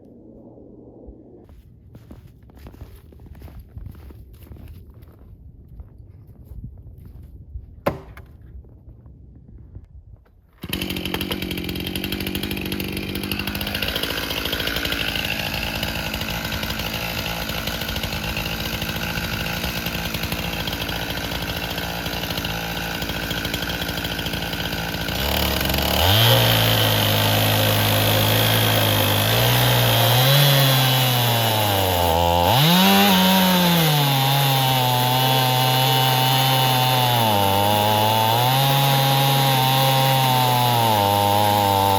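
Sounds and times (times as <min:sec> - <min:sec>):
single knock: 0:07.8 - 0:08.3
chainsaw cutting a log: 0:07.9 - 0:08.2, 0:10.6 - 0:41.9.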